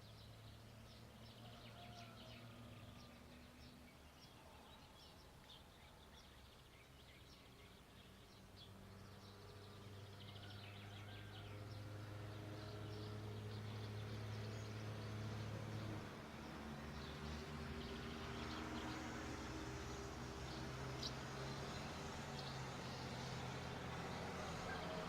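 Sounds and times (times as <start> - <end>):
small birds chirping: 0.0 - 25.0
low engine hum: 5.7 - 25.0.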